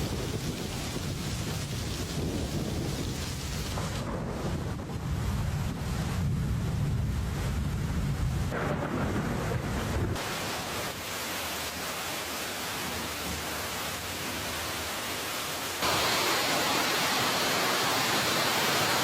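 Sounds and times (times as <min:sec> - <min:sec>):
wind rumbling on microphone: 0:00.0 - 0:11.0
hail downpour hissing: 0:00.0 - 0:19.0.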